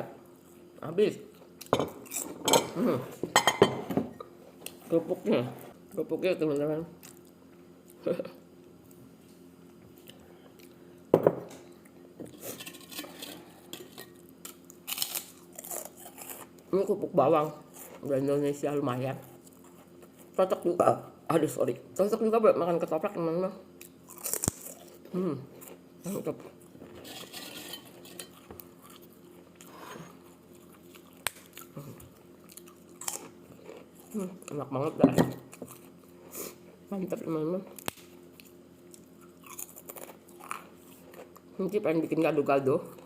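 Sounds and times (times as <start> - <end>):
cutlery scraping on a plate: 12.4 - 14.2, 26.9 - 28.5
person chewing: 23.8 - 26.8, 28.3 - 34.6, 35.5 - 36.7, 37.7 - 41.5.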